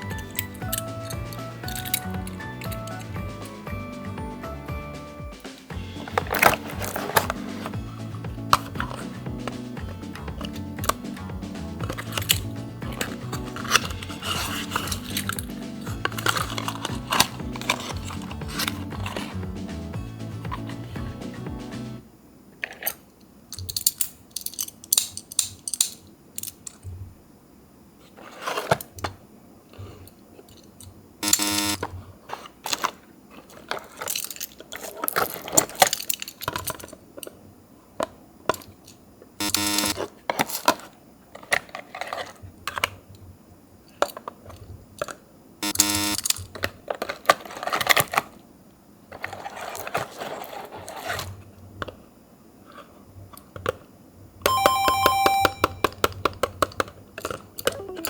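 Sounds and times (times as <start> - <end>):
toy cars clicking and rattling: 0.0 - 3.6, 11.7 - 19.4, 22.6 - 26.8, 30.4 - 37.4, 38.0 - 43.0, 43.9 - 48.4, 49.1 - 52.0, 56.0 - 57.9.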